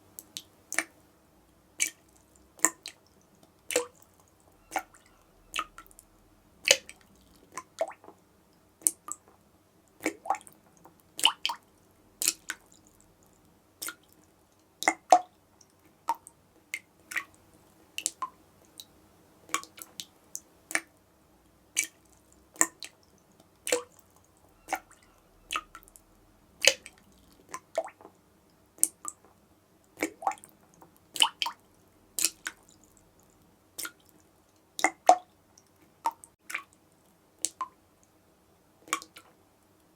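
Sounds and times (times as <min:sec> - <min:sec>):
water dripping from tap: 0:01.8 - 0:06.0, 0:12.2 - 0:17.4, 0:19.5 - 0:20.1, 0:21.8 - 0:26.0, 0:26.6 - 0:28.2, 0:30.0 - 0:30.6, 0:31.2 - 0:34.2, 0:34.8 - 0:36.7, 0:37.4 - 0:38.1, 0:38.9 - 0:39.4.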